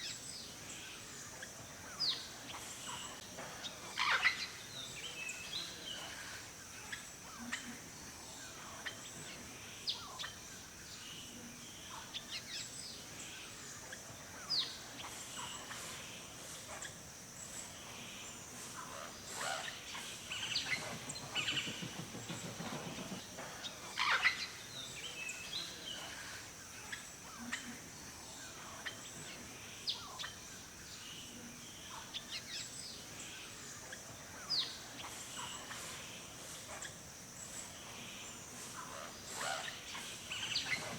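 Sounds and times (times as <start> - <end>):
high-pitched hiss: 0.0 - 40.9
birds chirping: 11.0 - 30.4, 31.0 - 40.9.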